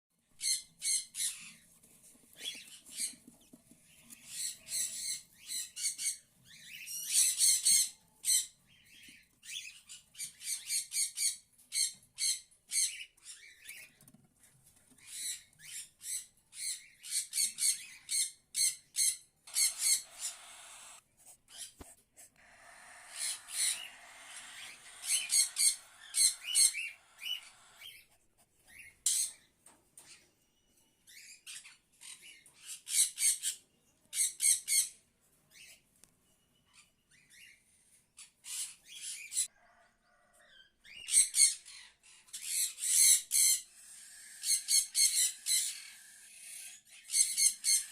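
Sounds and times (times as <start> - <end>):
cockatiel chicks raspy calls: 15.0 - 30.1, 38.2 - 47.9.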